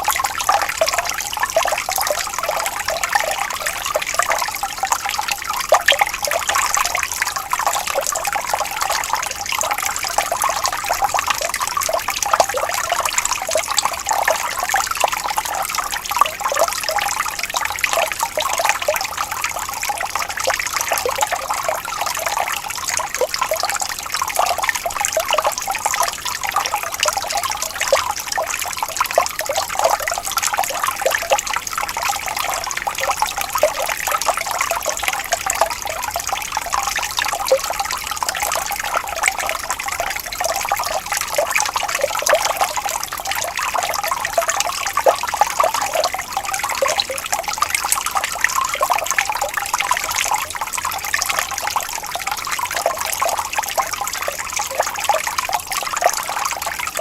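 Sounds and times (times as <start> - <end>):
shallow water trickling over stones: 0.0 - 57.0.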